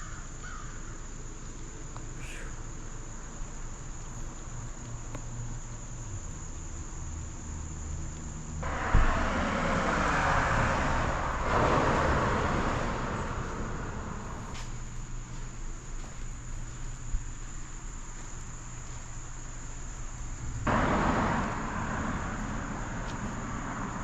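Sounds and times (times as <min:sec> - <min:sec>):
crickets chirring: 0:00.0 - 0:24.0
low vehicle hum: 0:00.0 - 0:24.0
rushing noise: 0:08.6 - 0:14.7, 0:20.6 - 0:24.0.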